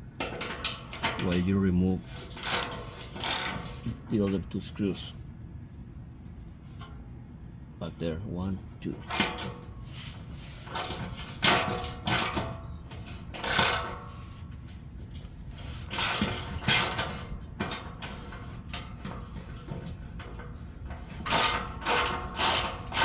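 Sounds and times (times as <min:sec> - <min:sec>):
hand ratchet clicking: 0:00.5 - 0:01.4, 0:02.1 - 0:04.0, 0:09.0 - 0:14.2, 0:15.6 - 0:19.9, 0:20.9 - 0:23.0.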